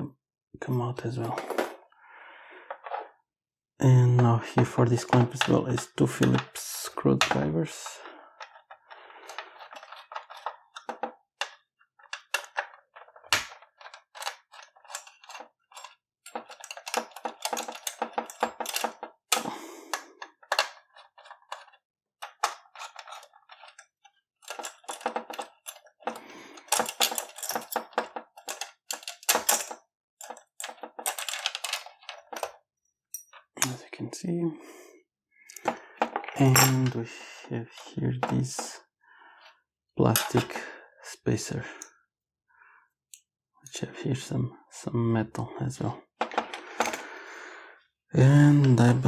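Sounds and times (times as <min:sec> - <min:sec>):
small metal parts clinking: 0:08.4 - 0:19.6, 0:20.2 - 0:33.4
screwdriver clicking and scraping: 0:08.4 - 0:32.5.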